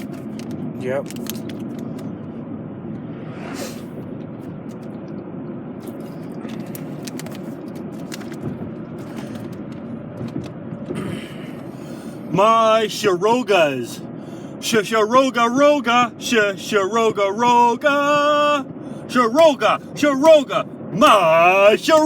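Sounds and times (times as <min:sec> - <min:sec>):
car cabin rumble: 0:00.0 - 0:22.0.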